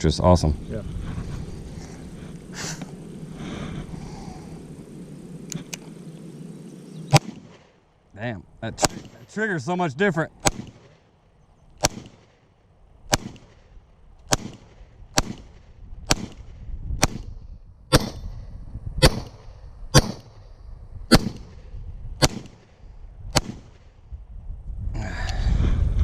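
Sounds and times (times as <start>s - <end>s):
handgun shots: 7.1s - 7.6s, 8.8s - 9.2s, 10.4s - 10.8s, 11.8s - 12.3s, 13.1s - 13.5s, 14.3s - 15.5s, 17.9s - 18.2s, 19.0s - 19.4s, 20.0s - 20.2s, 21.1s - 21.5s, 22.2s - 22.6s.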